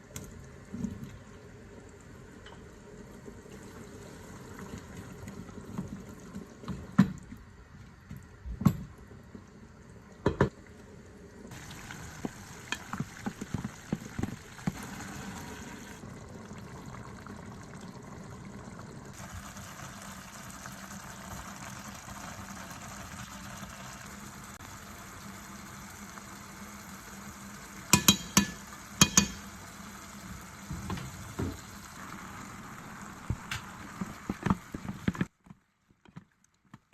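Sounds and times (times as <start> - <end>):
food sizzling in a pot: 11.5 - 35.3
utensil knocking against pot: 28.0 - 29.4.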